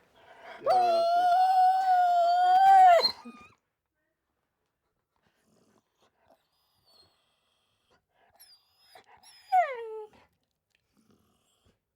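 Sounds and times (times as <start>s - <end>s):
dog whimpering: 0.5s - 3.4s.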